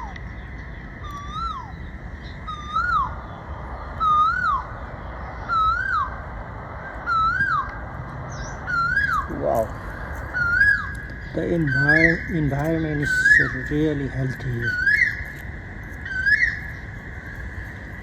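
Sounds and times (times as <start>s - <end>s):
low wind rumble: 0.0s - 18.0s
bird whistling call: 1.0s - 3.2s, 4.0s - 4.8s, 5.4s - 6.1s, 7.0s - 7.7s, 8.4s - 15.4s, 16.0s - 16.8s.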